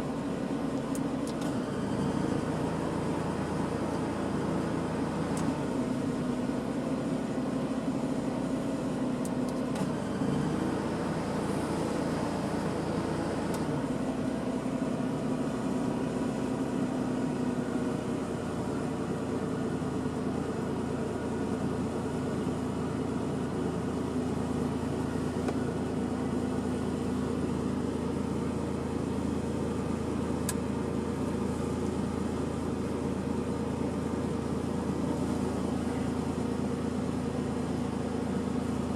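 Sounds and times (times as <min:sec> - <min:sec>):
car engine idling: 0:10.6 - 0:38.9.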